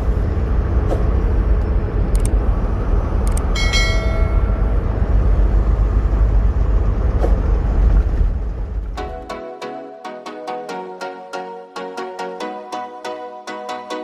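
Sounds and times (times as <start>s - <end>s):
truck engine rumble: 0.0s - 9.3s
click: 1.6s - 2.4s, 3.2s - 3.5s.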